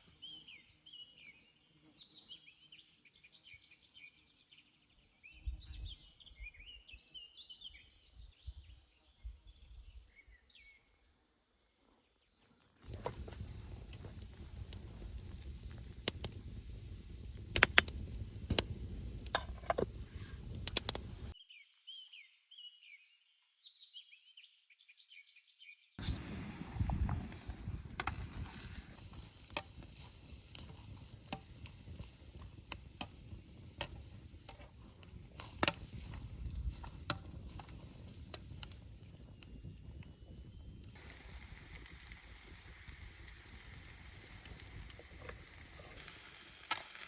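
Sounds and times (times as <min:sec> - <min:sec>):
birds chirping: 0:12.9 - 0:21.4.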